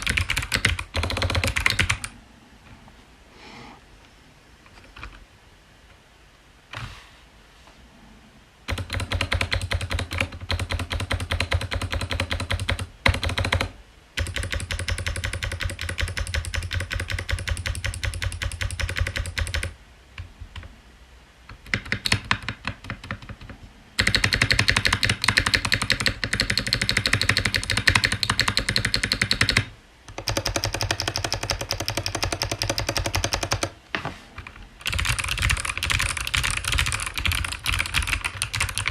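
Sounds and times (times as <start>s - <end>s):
typing on a clicky mechanical keyboard: 0.0s - 2.1s, 8.7s - 19.8s, 21.6s - 33.8s, 34.8s - 38.9s.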